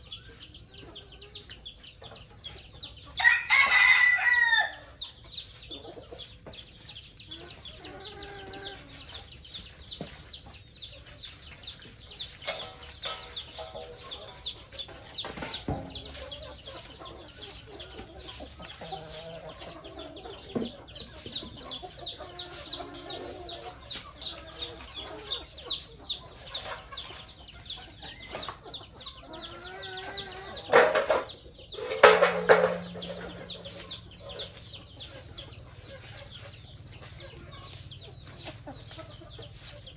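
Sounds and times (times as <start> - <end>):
chickens clucking: 0.0 - 39.9
chicks peeping: 0.0 - 39.9
loud chicken calls: 3.2 - 5.0.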